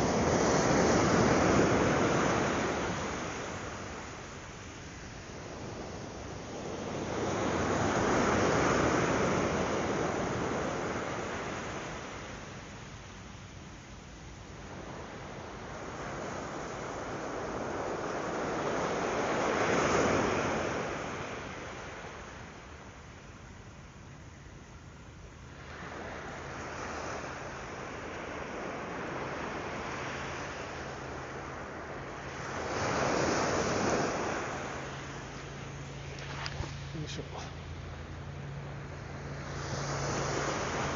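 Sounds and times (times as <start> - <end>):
wave breaking on beach: 0.0 - 12.5, 25.5 - 40.9.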